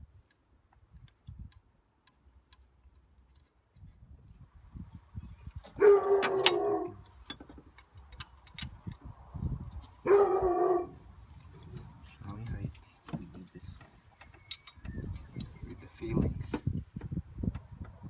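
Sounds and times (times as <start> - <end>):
faint clicks and knocks: 0.2 - 4.0
dog calling: 5.8 - 7.0.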